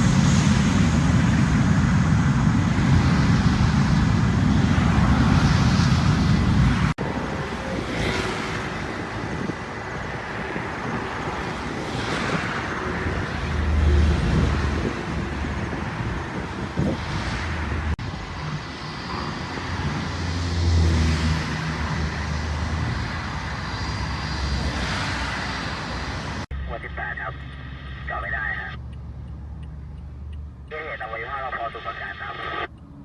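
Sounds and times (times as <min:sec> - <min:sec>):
traffic noise: 0:00.0 - 0:33.0
vehicle passing: 0:07.0 - 0:31.1.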